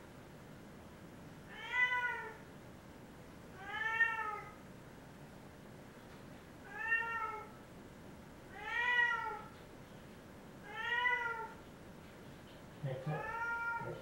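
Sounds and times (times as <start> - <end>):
cat meowing: 1.5 - 2.4, 3.6 - 4.6, 6.7 - 7.5, 8.5 - 9.6, 10.6 - 11.6, 13.0 - 14.0.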